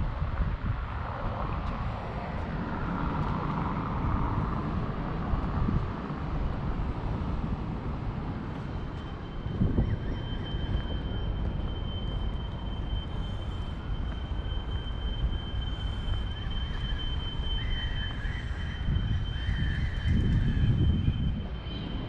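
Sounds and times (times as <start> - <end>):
road traffic: 0.0 - 22.0
wind rumbling on microphone: 0.0 - 22.0
faint high whine: 0.5 - 22.0.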